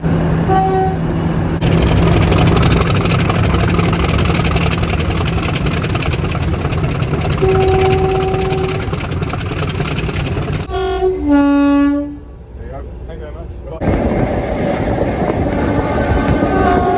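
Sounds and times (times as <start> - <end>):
train rumbling: 0.0 - 16.9
train horn: 0.4 - 1.2, 7.3 - 8.8, 10.7 - 12.4, 15.5 - 16.9.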